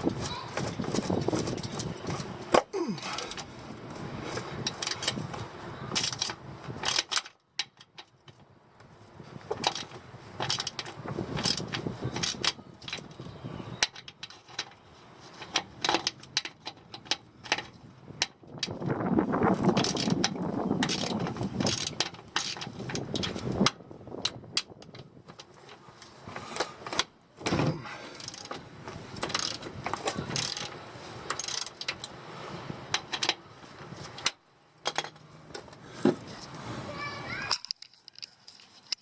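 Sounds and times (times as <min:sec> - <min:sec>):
ratchet wrench clicking: 0:28.1 - 0:28.6, 0:29.2 - 0:30.7, 0:31.3 - 0:32.1.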